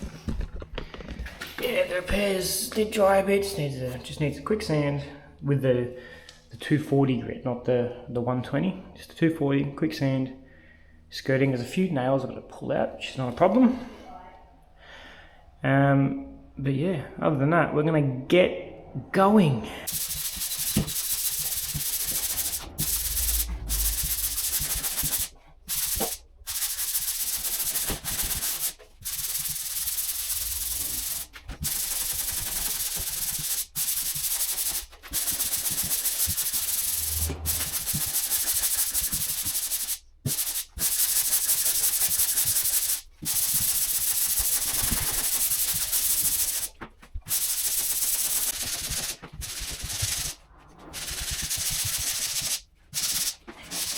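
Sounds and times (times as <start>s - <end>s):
sandpaper rubbing on plaster: 19.9s - 53.9s.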